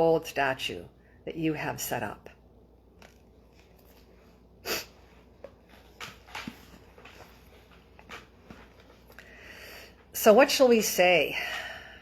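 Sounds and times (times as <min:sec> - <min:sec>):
faint breaths: 0:09.0 - 0:10.2.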